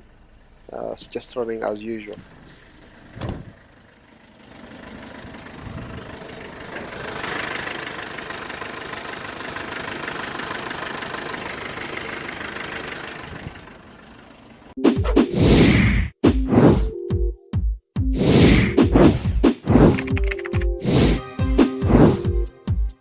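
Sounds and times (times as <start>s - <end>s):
diesel engine running: 0.0s - 14.8s.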